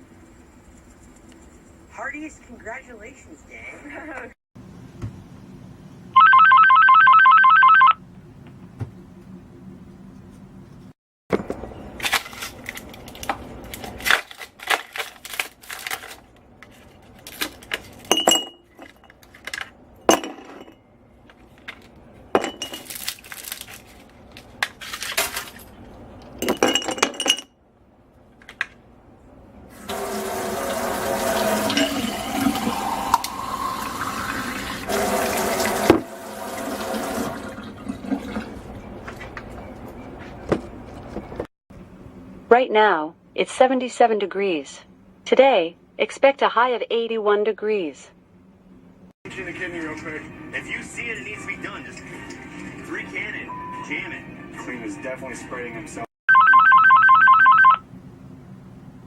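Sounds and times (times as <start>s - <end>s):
hard objects clinking: 21.5s - 23.9s
water running: 29.7s - 39.4s.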